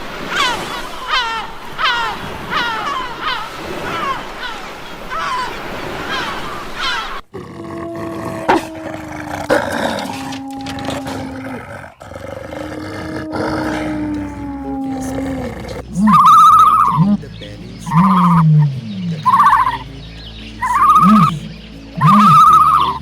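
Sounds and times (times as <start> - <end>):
long steady animal calls: 0.1 - 23.0
quick falling animal chirps: 16.0 - 17.2, 17.8 - 19.8, 20.6 - 21.4, 22.0 - 23.0.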